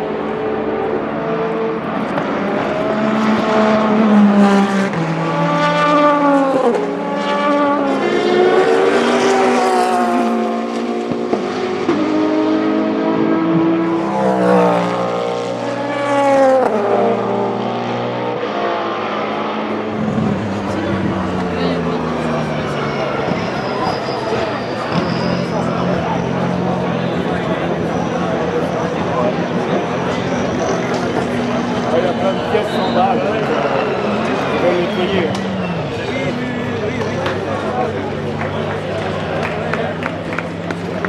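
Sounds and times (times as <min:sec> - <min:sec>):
race cars passing at speed: 0:00.0 - 0:41.0.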